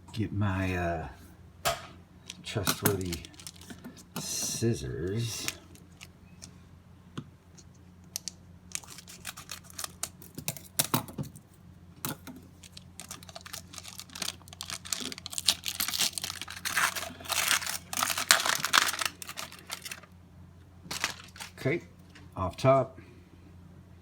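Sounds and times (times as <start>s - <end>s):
plastic wrapper crinkling: 2.3s - 4.1s, 5.1s - 6.1s, 8.2s - 10.4s, 12.2s - 20.2s, 20.9s - 21.7s.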